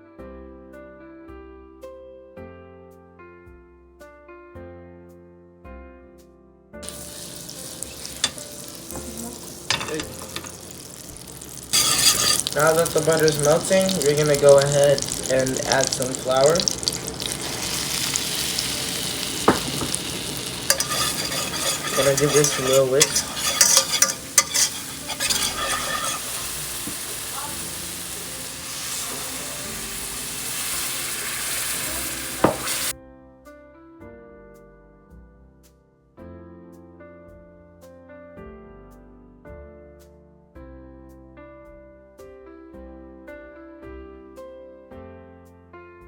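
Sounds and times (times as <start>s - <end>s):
soft piano music: 0.0s - 46.0s
butter sizzling in a pan: 6.8s - 32.9s
utensil clicking against pan: 11.7s - 13.4s, 20.6s - 27.0s.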